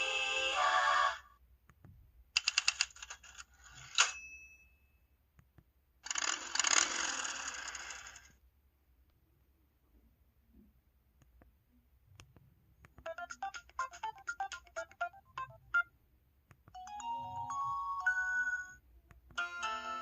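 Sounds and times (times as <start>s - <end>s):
sung a cappella tone: 0.0s - 1.3s
bell ding: 4.1s - 5.0s.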